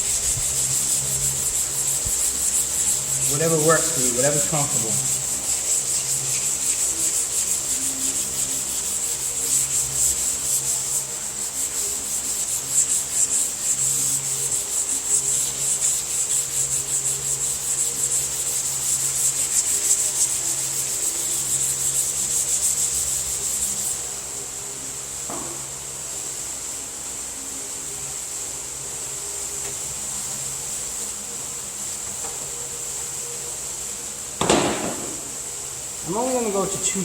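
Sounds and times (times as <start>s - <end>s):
sandpaper rubbing car panel: 0.0s - 24.1s.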